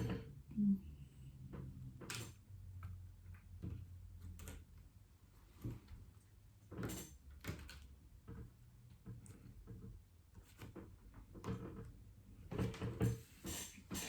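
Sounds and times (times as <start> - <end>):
low steady hum: 0.0 - 6.7.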